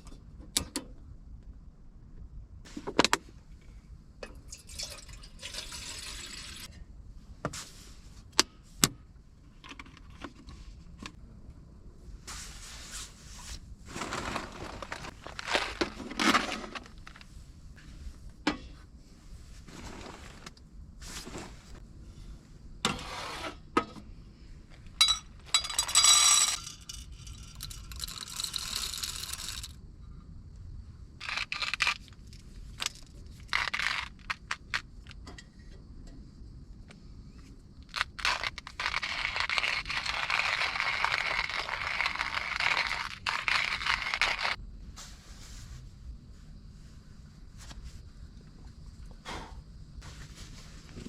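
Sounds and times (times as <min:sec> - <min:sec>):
rustling and scraping: 0:12.2 - 0:23.6, 0:37.9 - 0:48.8, 0:50.0 - 0:51.0.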